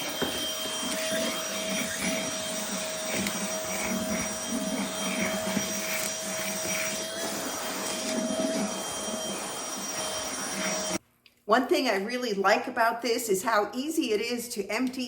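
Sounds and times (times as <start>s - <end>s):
handheld vacuum cleaner running: 0.0s - 11.0s.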